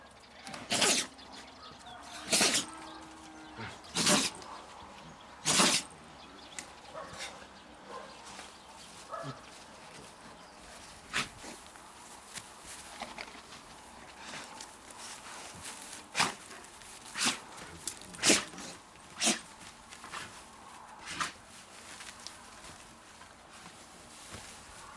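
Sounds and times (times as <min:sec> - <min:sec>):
dog sneezing: 0:00.6 - 0:01.1, 0:02.2 - 0:02.7, 0:04.0 - 0:04.4, 0:05.4 - 0:05.9, 0:17.2 - 0:17.4, 0:18.2 - 0:19.4.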